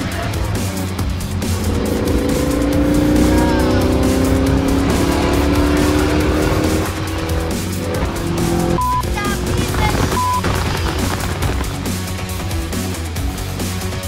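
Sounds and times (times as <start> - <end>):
music playing: 0.0 - 14.0
car engine revving high: 0.4 - 11.6.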